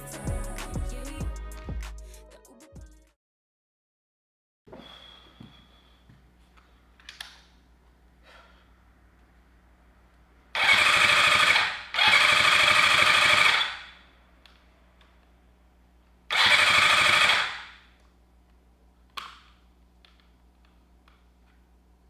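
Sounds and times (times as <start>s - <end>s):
starter motor cranking engine: 10.6s - 13.8s, 16.3s - 17.7s.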